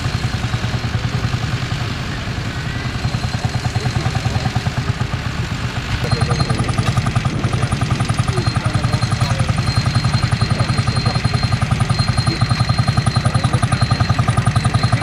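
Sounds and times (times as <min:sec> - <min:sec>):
rhythmic clatter: 0:00.0 - 0:15.0
tractor engine running: 0:00.0 - 0:15.0.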